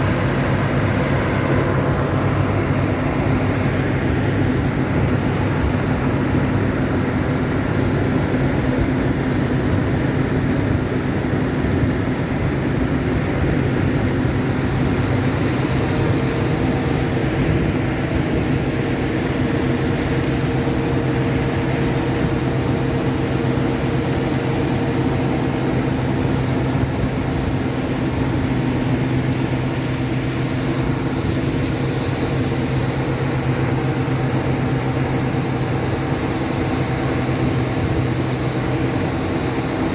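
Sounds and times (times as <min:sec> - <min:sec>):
engine drone: 0:00.0 - 0:39.9
machinery hiss: 0:13.3 - 0:39.9.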